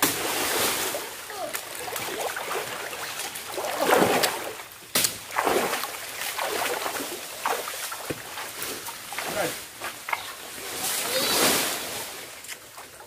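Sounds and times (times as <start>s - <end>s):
sharp splash or knock: 0.0s - 10.2s
water splashing and sloshing: 0.0s - 13.0s.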